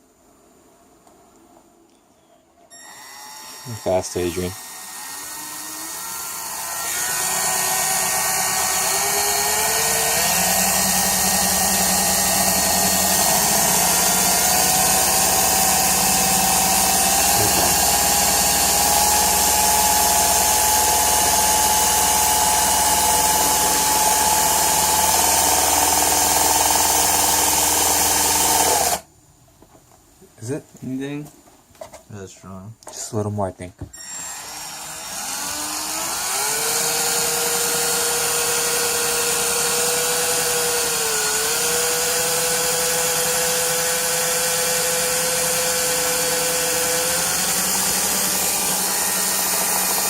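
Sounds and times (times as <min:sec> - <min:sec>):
electric drill boring into wood: 0:02.7 - 0:29.0, 0:34.0 - 0:50.0.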